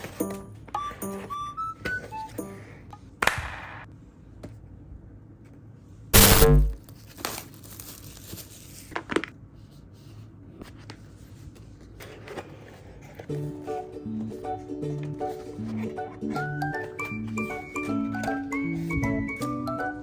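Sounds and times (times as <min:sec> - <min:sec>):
loud burst of noise: 0:06.2 - 0:06.8
plastic and paper crinkling: 0:06.8 - 0:09.3.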